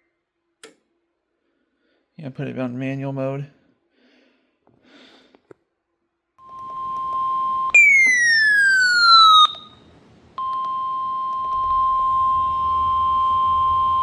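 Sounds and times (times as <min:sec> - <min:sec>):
falling electronic sweep: 0:07.8 - 0:09.8
steady alarm tone: 0:07.8 - 0:09.8.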